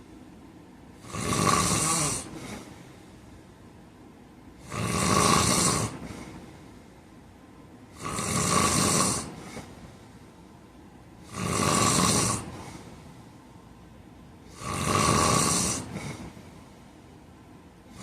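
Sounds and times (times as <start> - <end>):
man snoring: 1.0 - 2.7, 4.6 - 6.4, 7.9 - 9.7, 11.2 - 12.9, 14.5 - 16.4
faint breath: 2.2 - 3.6, 5.9 - 7.4, 9.2 - 10.6, 12.4 - 13.7, 15.7 - 18.0.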